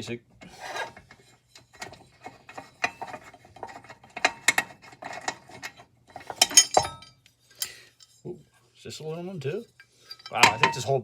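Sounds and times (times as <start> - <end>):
small metal clinks and knocks: 1.0 - 8.3, 9.7 - 11.0.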